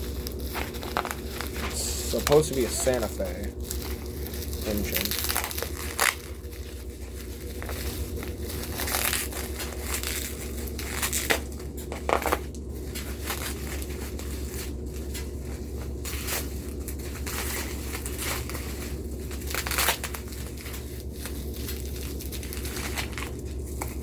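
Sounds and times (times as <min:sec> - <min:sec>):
packing material crinkling and tearing: 0:00.0 - 0:24.0
sharp crackles: 0:00.0 - 0:24.0.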